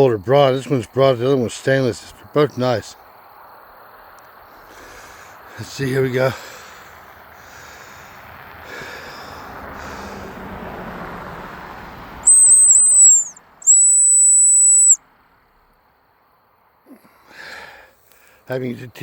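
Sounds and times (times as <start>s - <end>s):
dog whistle blasts: 12.2s - 15.0s.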